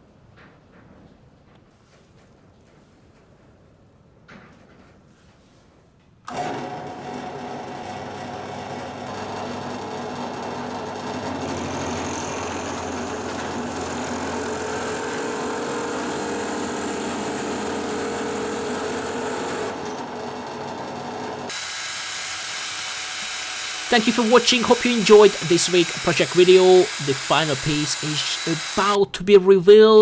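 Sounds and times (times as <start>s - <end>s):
power tool motor whining: 6.3s - 29.0s.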